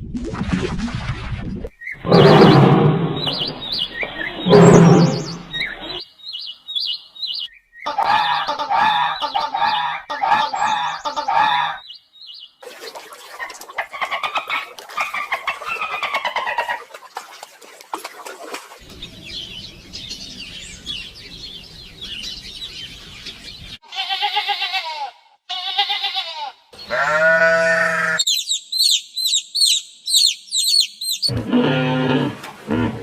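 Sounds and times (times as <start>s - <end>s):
livestock bleating: 23.8s - 28.2s
high repeated chirps: 28.3s - 31.3s.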